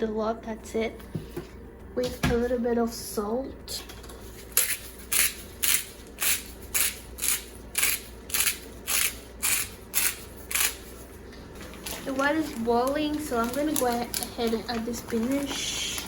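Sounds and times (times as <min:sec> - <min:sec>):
salt grinder grinding: 0:04.4 - 0:10.9.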